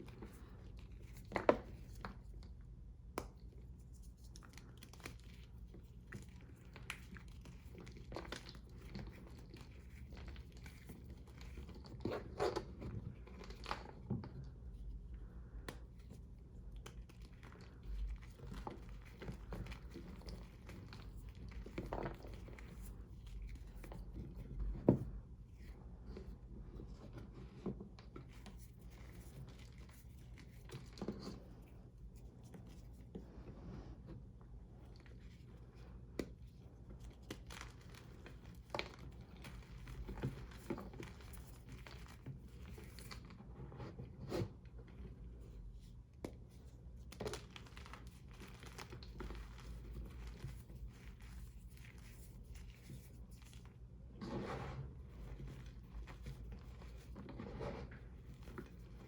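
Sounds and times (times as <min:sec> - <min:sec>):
chalk crunching and crumbling: 0:47.1 - 0:59.0.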